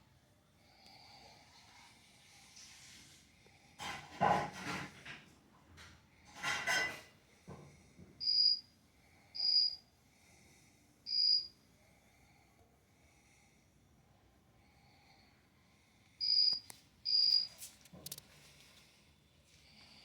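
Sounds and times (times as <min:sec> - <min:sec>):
high background chirring: 0:08.2 - 0:08.6, 0:11.1 - 0:11.5, 0:16.2 - 0:18.2
cricket chirps: 0:08.2 - 0:08.7, 0:09.4 - 0:09.8, 0:11.1 - 0:11.6, 0:16.2 - 0:18.2.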